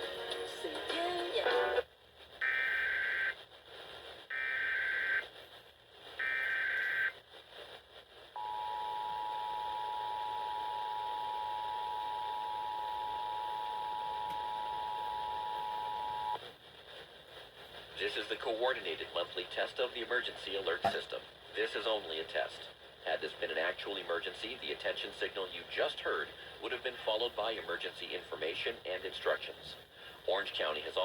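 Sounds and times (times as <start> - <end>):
radio station music: 0.0 - 7.2, 8.3 - 16.4, 17.8 - 31.0
buzzy data bursts: 2.4 - 3.4
two-tone attention signal: 8.4 - 16.4.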